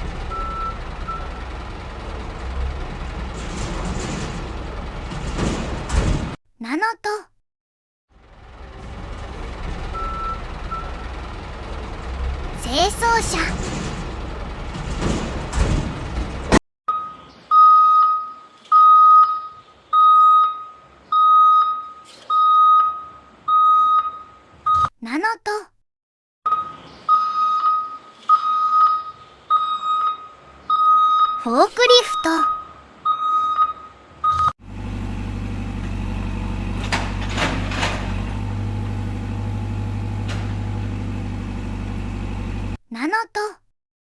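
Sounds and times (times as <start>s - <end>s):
engine and mechanical noise: 0.0s - 6.4s, 8.1s - 16.6s, 32.7s - 42.8s
vehicle reversing alarm beeping: 0.3s - 1.6s, 9.9s - 11.2s, 16.9s - 24.9s, 26.5s - 31.4s, 32.0s - 37.0s.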